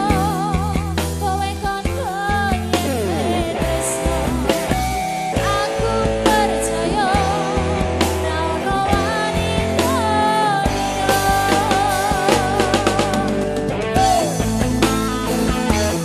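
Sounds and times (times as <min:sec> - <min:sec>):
live band playing: 0:00.0 - 0:16.0.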